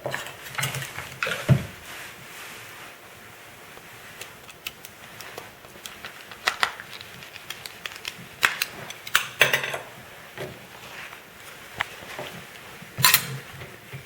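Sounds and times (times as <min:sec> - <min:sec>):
plastic parts clicking and tapping: 0:04.2 - 0:09.6.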